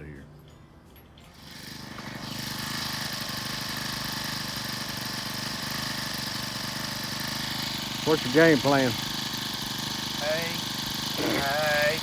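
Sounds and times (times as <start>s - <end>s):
engine running steadily: 1.3s - 12.0s.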